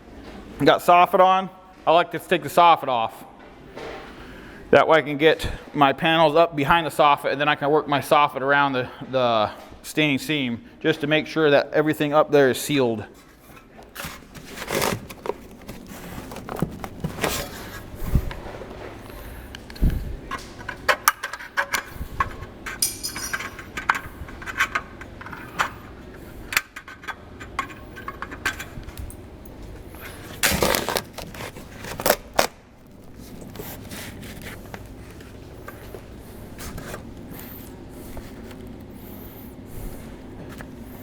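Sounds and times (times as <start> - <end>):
small metal pieces clinking: 22.8 - 24.0.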